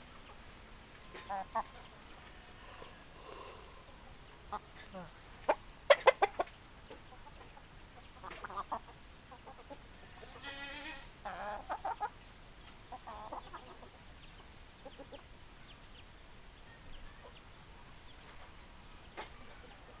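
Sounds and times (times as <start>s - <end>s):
hens clucking: 1.0s - 12.2s, 12.9s - 15.3s.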